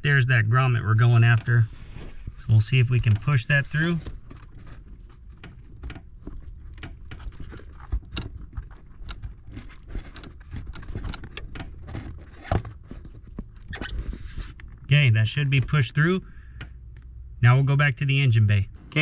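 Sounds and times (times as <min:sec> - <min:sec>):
small clicks and rattles: 0:03.9 - 0:14.8.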